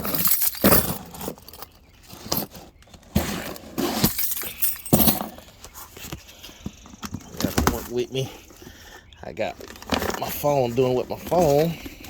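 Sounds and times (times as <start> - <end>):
keys clinking: 0.0 - 2.5, 3.5 - 5.4.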